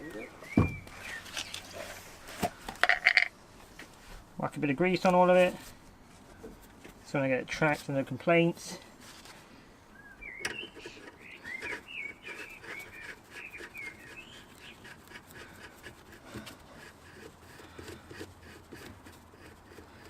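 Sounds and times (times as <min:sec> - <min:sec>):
small bird chirping: 0:10.0 - 0:14.9.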